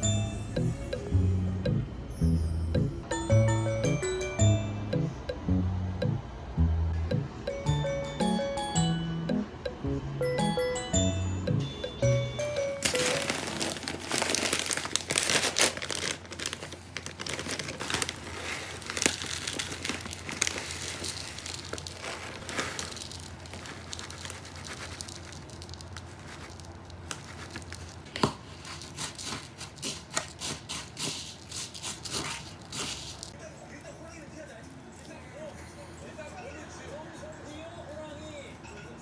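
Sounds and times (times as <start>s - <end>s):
crinkling and rustling: 12.8s - 33.4s.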